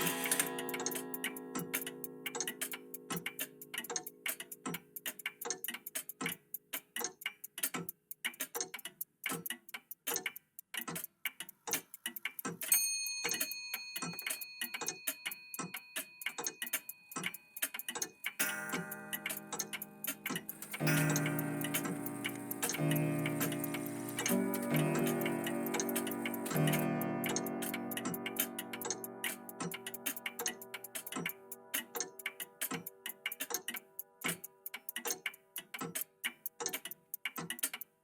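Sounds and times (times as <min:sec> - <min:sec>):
clock chime ringing: 0:00.0 - 0:02.0, 0:18.4 - 0:27.8
clocks ticking: 0:00.0 - 0:38.0.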